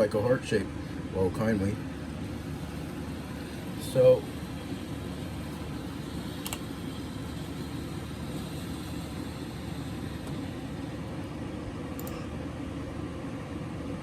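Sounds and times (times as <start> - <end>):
low background rumble: 0.0 - 14.0
faint click: 12.0 - 12.2.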